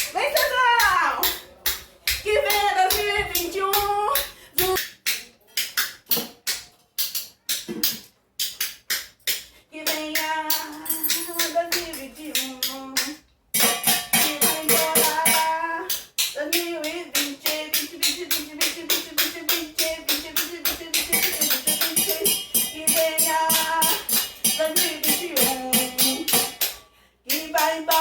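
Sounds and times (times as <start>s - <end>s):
spoons clacking rhythmically: 0.0s - 28.0s
person singing: 9.7s - 13.2s, 14.2s - 26.6s, 27.3s - 28.0s.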